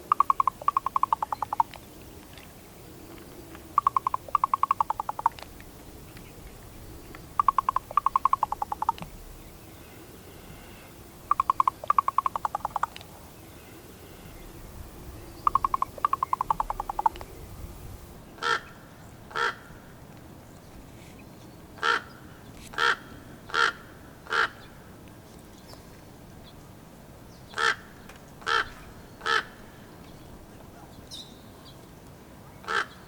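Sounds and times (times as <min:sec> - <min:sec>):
raven calls: 0:00.0 - 0:01.8, 0:03.6 - 0:05.5, 0:07.4 - 0:09.1, 0:10.7 - 0:13.1, 0:15.4 - 0:17.3, 0:18.4 - 0:19.9, 0:21.8 - 0:24.8, 0:27.5 - 0:29.9, 0:32.6 - 0:33.0
raven knocking clicks: 0:07.1 - 0:09.1.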